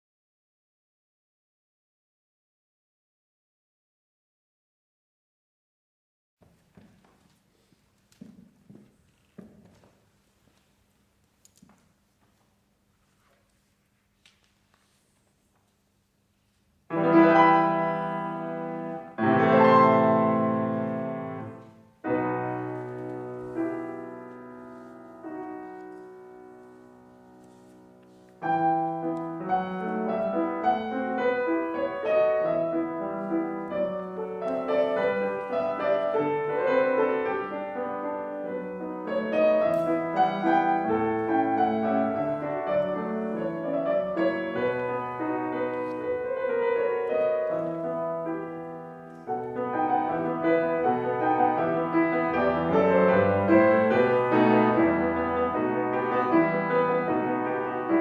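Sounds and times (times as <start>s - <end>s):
solo piano piece: 16.9s - 58.0s.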